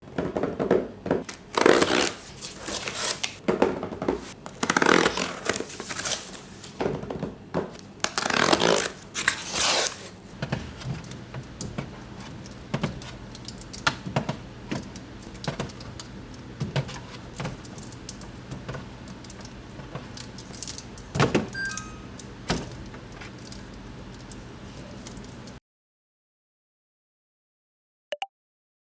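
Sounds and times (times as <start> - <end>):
plastic packaging crinkling: 1.2 - 3.4, 4.2 - 6.9, 7.8 - 25.6
containers clicking and knocking: 10.3 - 25.6.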